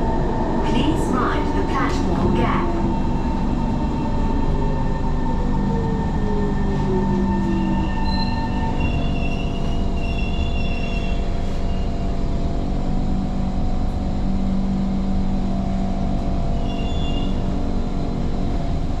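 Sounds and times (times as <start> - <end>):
train rumbling on rails: 0.0 - 19.0
high-pitched wheel squeals: 6.2 - 12.1, 16.6 - 17.5.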